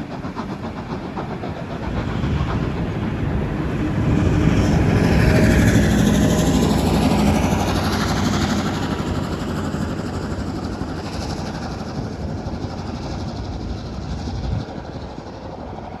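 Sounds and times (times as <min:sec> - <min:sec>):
steam locomotive exhaust beats: 0:00.0 - 0:16.0.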